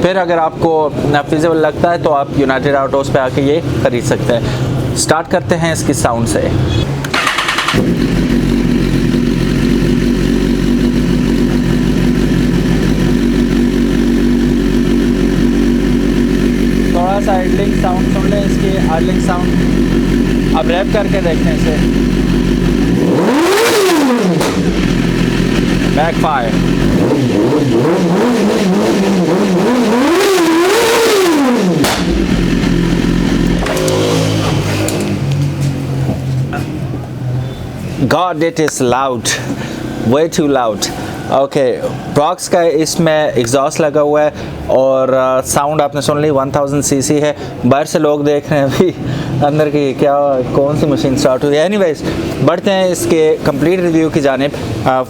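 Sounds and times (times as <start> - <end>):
exhaust backfire crack: 7.0 - 36.8
motorcycle engine idling: 7.1 - 29.4, 30.1 - 35.7.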